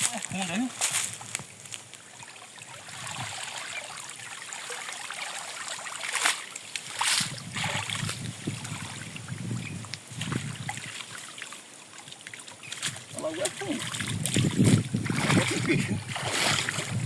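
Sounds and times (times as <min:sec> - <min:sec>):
water splashes: 0:00.0 - 0:17.0
water sloshing from wading: 0:01.0 - 0:17.0.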